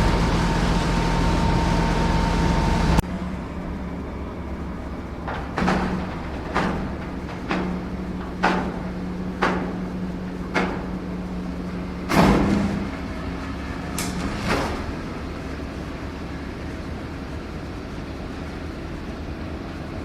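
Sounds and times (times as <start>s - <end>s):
electric hydraulic pump humming: 0.0s - 16.4s
sharp knocks: 5.3s - 11.1s.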